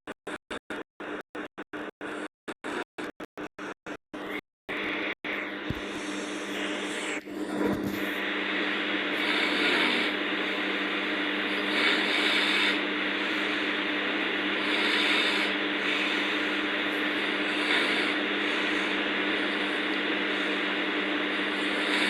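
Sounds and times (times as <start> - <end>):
steady low hum: 0.3 - 22.0
person snoring: 5.3 - 22.0.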